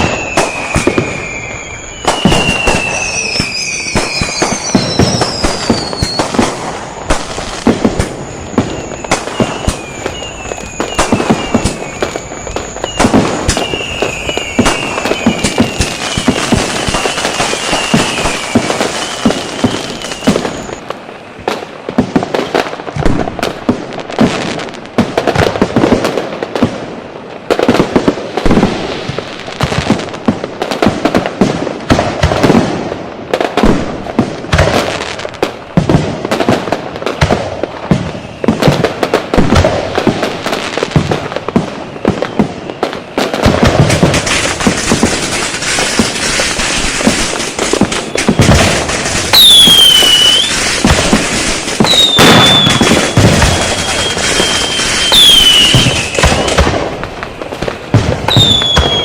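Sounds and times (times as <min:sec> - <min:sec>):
short falling whistles: 0:00.0 - 0:06.3, 0:08.2 - 0:20.8, 0:49.3 - 0:50.8, 0:51.9 - 0:56.6, 0:58.3 - 0:59.0
firecracker bangs: 0:00.0 - 0:59.0.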